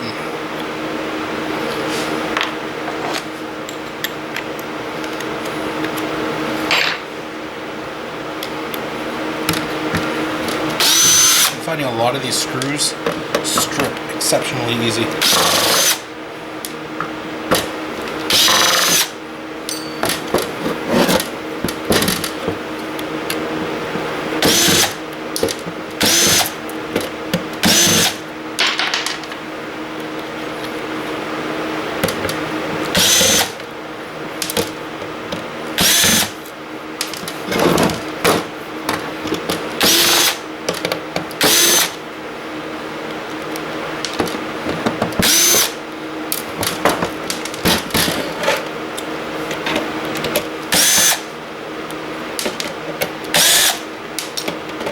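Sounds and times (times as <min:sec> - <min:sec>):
steady low hum: 0:00.0 - 0:54.9
cordless drill whirring: 0:10.8 - 0:11.6, 0:15.2 - 0:16.0, 0:18.3 - 0:19.1, 0:24.4 - 0:25.0, 0:26.0 - 0:26.6, 0:27.6 - 0:28.2, 0:32.9 - 0:33.6, 0:35.8 - 0:36.4, 0:39.8 - 0:40.4, 0:41.4 - 0:42.0, 0:45.2 - 0:45.8, 0:50.7 - 0:51.3, 0:53.4 - 0:53.8.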